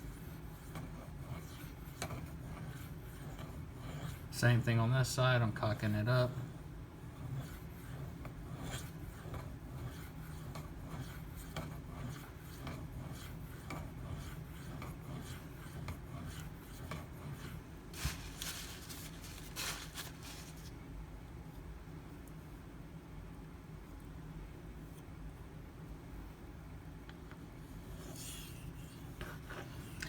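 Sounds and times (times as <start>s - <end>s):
knife rasping on a whetstone: 0.0s - 4.4s, 5.8s - 20.7s, 27.7s - 30.0s.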